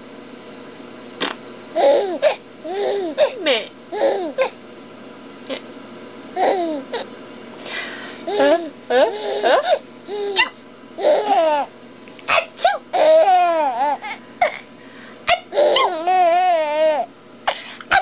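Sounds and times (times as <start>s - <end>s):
baby laughing: 1.8s - 4.6s, 6.4s - 7.1s, 8.3s - 11.7s, 12.3s - 14.6s, 15.3s - 17.1s.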